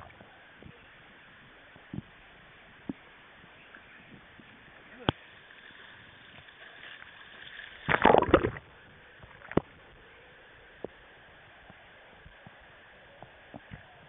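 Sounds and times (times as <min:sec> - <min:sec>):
water splashing against canoe: 0:06.5 - 0:08.7.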